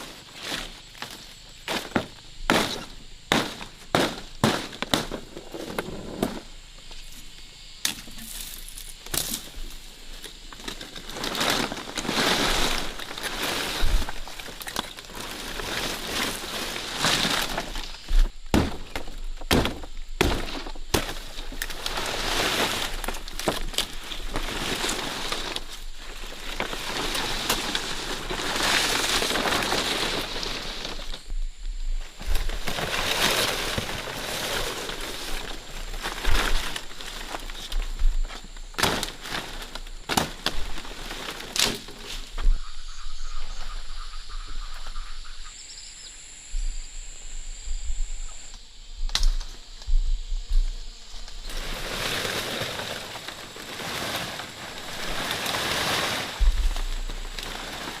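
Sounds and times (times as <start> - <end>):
rustling or scraping noise: 0.0 - 7.3, 8.1 - 18.4, 20.4 - 31.3, 32.0 - 42.5, 50.6 - 58.0
sharp cracks and knocks: 0.5 - 6.4, 10.5 - 30.2, 35.3 - 42.5, 52.4 - 58.0.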